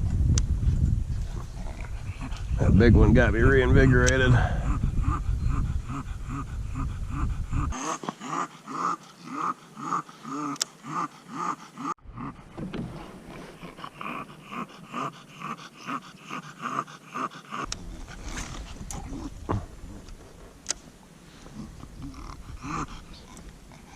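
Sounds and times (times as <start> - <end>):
dog panting noisily: 1.2 - 20.4.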